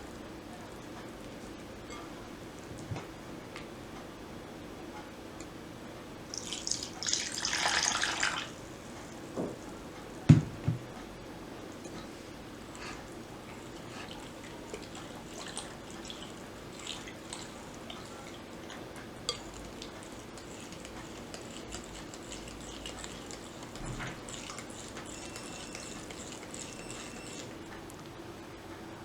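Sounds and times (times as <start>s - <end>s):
utensils clinking against bowl: 1.8s - 2.2s, 11.8s - 27.9s
wet food squelching: 6.3s - 9.2s, 12.2s - 27.9s.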